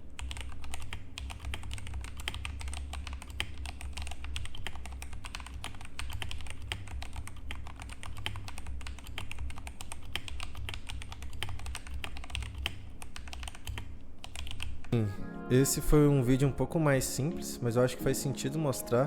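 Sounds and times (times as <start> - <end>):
mechanical keyboard typing: 0.2 - 14.9.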